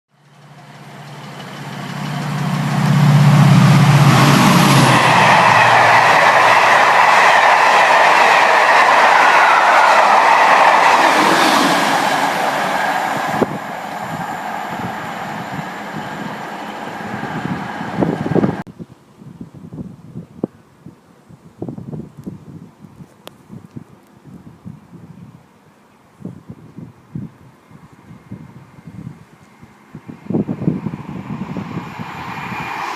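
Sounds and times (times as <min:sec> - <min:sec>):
train passing at speed: 0:00.1 - 0:18.7, 0:27.9 - 0:32.9.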